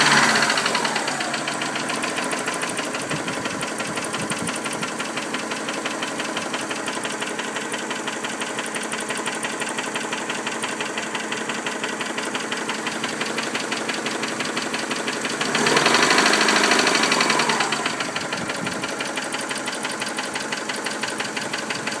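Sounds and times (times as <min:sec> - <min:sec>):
engine revving: 0:00.0 - 0:03.4, 0:15.3 - 0:18.4
car engine idling with ticking: 0:00.0 - 0:22.0.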